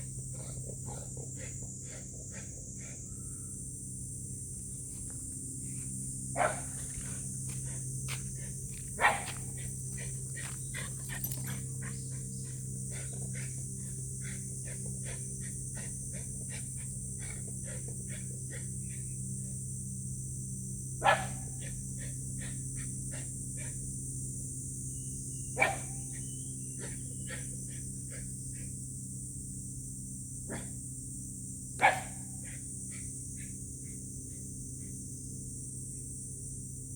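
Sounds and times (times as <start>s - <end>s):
dog barking sharply: 31.8s - 32.3s.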